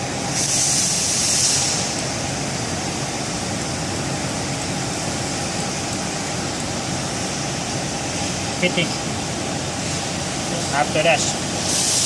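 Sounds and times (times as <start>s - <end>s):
machinery humming: 0.0s - 12.0s
short high hiss: 0.3s - 2.0s, 11.6s - 12.0s.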